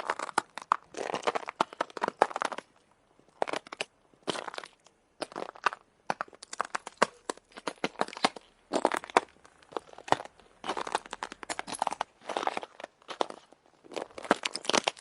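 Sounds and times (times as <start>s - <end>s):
footsteps crunching on ice: 3.4s - 15.0s.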